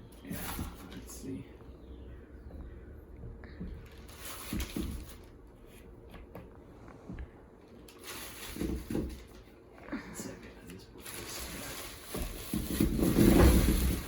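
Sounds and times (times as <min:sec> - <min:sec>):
potatoes rustling: 0:11.0 - 0:14.0.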